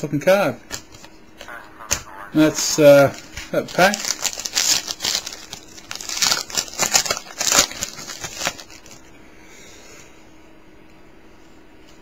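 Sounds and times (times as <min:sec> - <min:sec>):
faint steady hum: 0:00.0 - 0:12.0
wrapper crinkling and tearing: 0:03.1 - 0:09.0.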